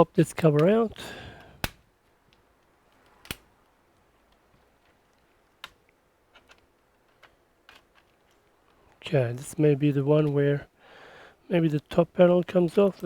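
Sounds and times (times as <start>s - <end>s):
sharp plastic clicks: 1.4s - 4.4s.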